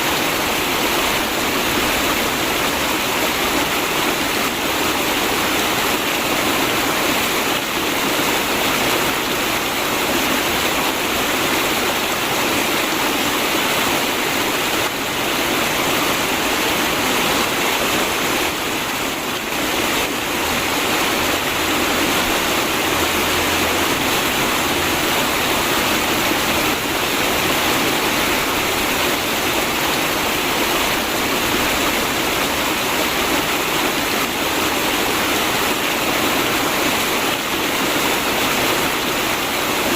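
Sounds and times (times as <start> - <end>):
river water flowing: 0.0 - 39.9.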